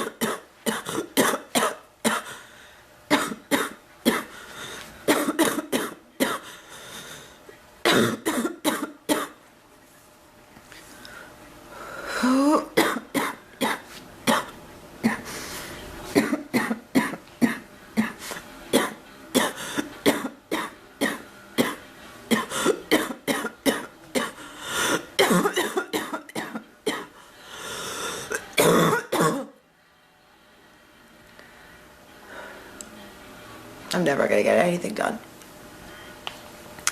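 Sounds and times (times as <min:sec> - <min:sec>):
woman coughing: 0:00.0 - 0:02.4, 0:03.1 - 0:04.3, 0:05.1 - 0:06.5, 0:07.8 - 0:09.4, 0:12.2 - 0:15.3, 0:16.1 - 0:27.2, 0:28.5 - 0:29.6.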